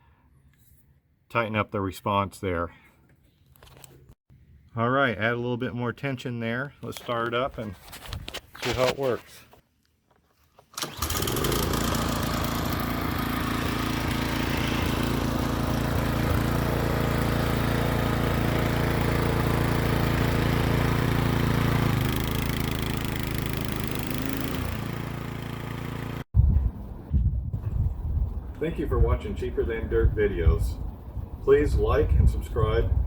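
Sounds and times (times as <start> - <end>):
lawn mower engine running: 10.8 - 26.3.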